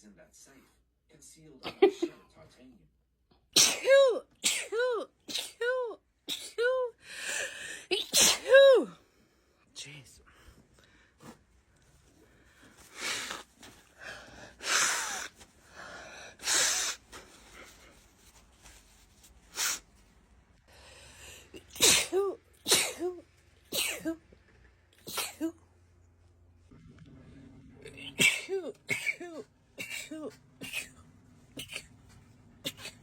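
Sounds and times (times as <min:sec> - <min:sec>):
woman sneezing: 0:03.6 - 0:07.0, 0:07.9 - 0:09.0, 0:21.6 - 0:24.2, 0:25.0 - 0:25.6, 0:27.9 - 0:31.0, 0:32.6 - 0:33.0.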